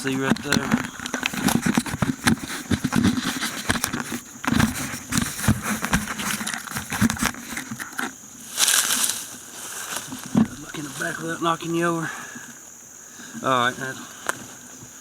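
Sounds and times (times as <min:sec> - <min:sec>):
microphone handling noise: 0:00.0 - 0:11.2.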